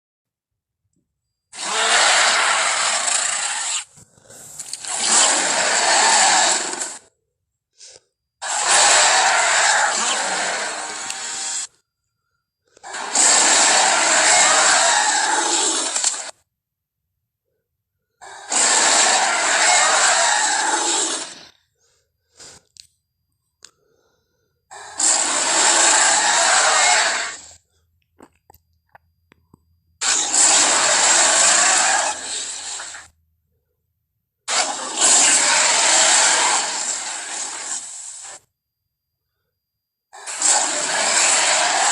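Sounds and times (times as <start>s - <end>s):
harsh creature roars: 1.6s - 7.0s, 8.4s - 11.7s, 12.8s - 16.3s, 18.2s - 21.5s, 24.7s - 27.5s, 30.0s - 33.0s, 34.5s - 37.9s, 40.2s - 41.9s.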